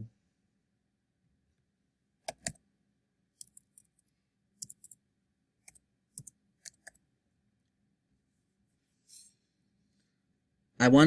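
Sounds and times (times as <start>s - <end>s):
computer mouse clicks: 2.2s - 2.6s, 3.4s - 5.0s, 5.6s - 7.0s.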